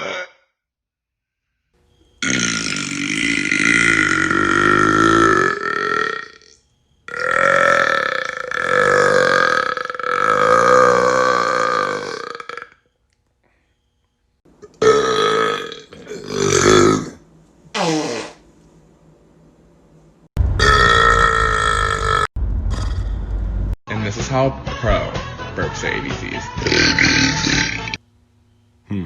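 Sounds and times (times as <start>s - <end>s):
man burping: 0.0s - 0.5s, 2.2s - 6.4s, 7.1s - 12.8s, 14.6s - 17.2s, 20.6s - 23.0s, 26.6s - 28.0s.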